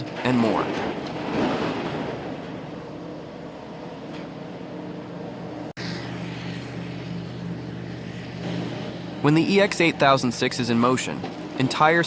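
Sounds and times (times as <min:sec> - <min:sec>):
excavator diesel engine running: 0:01.9 - 0:12.0.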